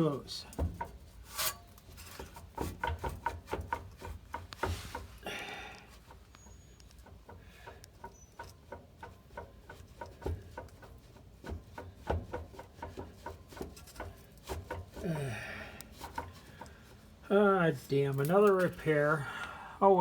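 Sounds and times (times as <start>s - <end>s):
universal joint clicking and knocking: 1.9s - 5.1s, 6.0s - 15.2s.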